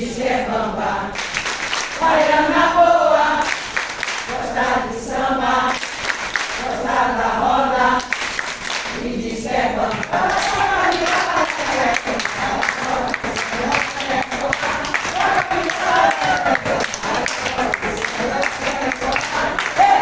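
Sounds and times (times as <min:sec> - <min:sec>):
group of voices singing: 0:00.0 - 0:20.0.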